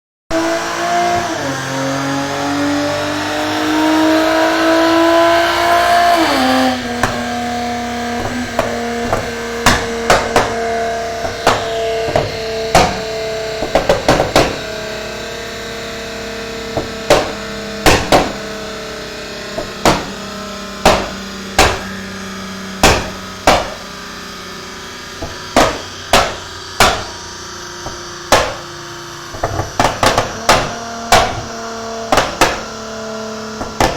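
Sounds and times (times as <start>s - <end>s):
car engine revving on dyno: 0.3s - 33.9s
exhaust pops and bangs: 4.2s - 24.2s, 25.2s - 33.9s.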